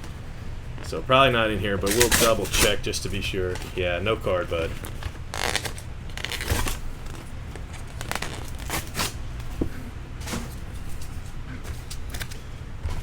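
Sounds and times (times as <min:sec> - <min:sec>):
low steady hum: 0:00.0 - 0:13.0
packaging tearing and crinkling: 0:01.8 - 0:09.2.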